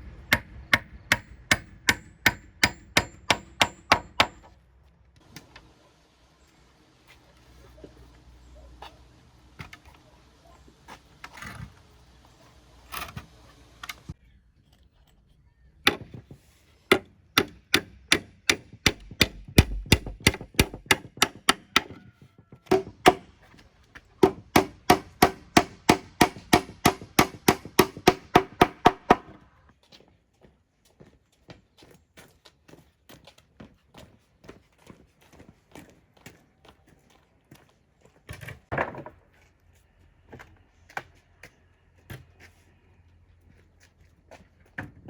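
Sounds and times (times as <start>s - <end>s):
hammer blows on wood: 24.2s - 29.3s.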